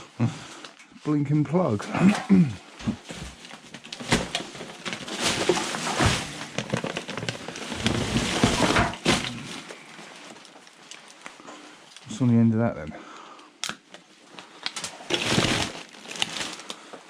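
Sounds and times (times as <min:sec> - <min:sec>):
rubbish rustling: 0:02.0 - 0:12.1, 0:14.0 - 0:17.0.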